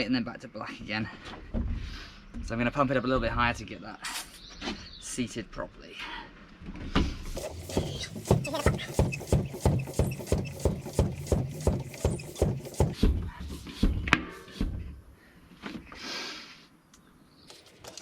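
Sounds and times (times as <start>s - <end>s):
bike pump strokes: 7.3s - 13.9s.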